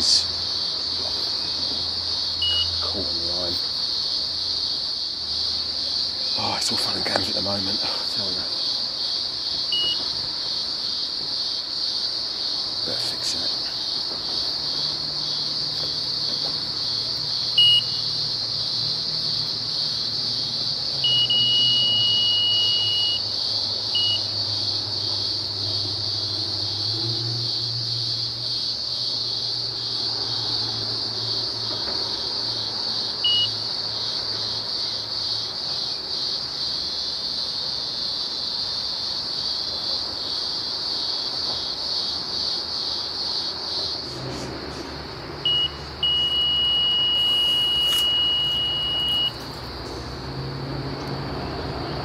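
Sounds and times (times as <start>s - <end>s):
bite alarm beep: 2.4s - 2.8s, 9.8s - 10.0s, 17.6s - 18.1s, 21.0s - 23.2s, 24.0s - 24.3s, 33.2s - 33.6s, 45.5s - 49.4s
unbroken alarm tone: 17.6s - 18.1s, 21.0s - 23.2s, 45.5s - 49.5s.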